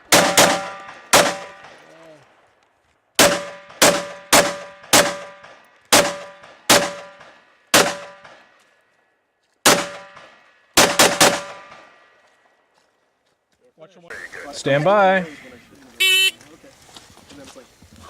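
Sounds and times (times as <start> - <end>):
rifle shots with metallic ring: 0.1 - 1.8, 3.2 - 8.4, 9.7 - 11.9.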